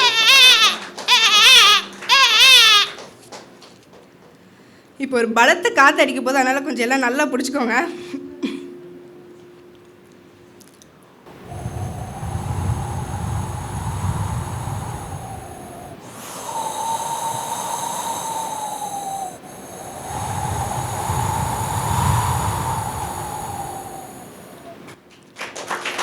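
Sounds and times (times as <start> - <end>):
person imitating wind with mouth: 11.3 - 25.0.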